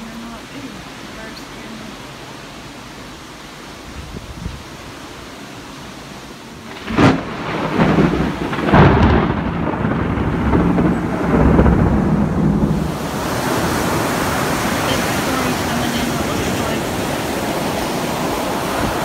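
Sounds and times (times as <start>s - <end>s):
heavy rain hiss: 0.0s - 19.0s
thunder cracking and rumbling: 6.7s - 19.0s.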